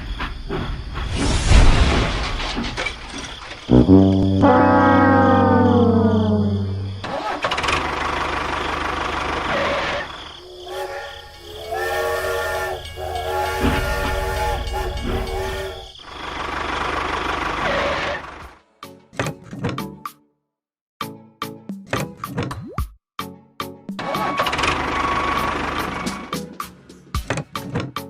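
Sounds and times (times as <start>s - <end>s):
multi-tone horn blasts: 3.7s - 7.0s, 10.4s - 16.0s
falling horn-like tone: 3.7s - 7.1s
vehicle engine running: 3.7s - 10.3s, 15.0s - 18.6s.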